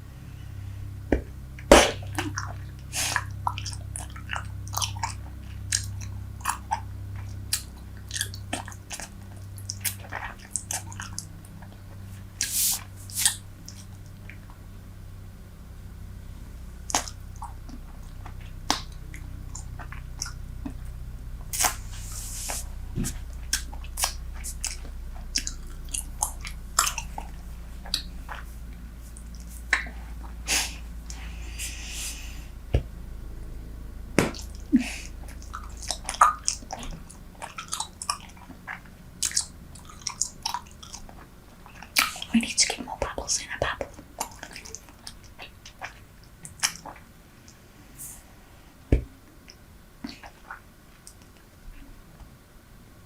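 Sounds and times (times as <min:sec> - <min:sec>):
gum chewing smacks: 0:01.1 - 0:14.6, 0:16.8 - 0:21.8, 0:22.5 - 0:31.3, 0:34.2 - 0:47.6, 0:49.4 - 0:51.5
breathy hisses: 0:30.4 - 0:32.6.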